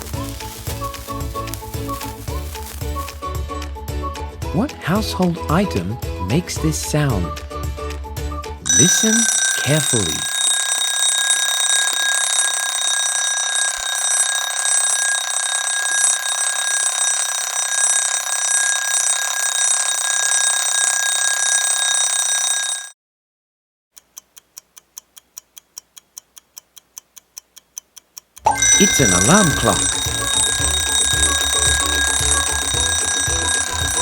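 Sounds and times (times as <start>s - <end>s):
clock ticking: 8.7s - 22.6s, 24.0s - 34.0s
alarm clock ringing: 8.7s - 23.0s, 28.5s - 34.0s.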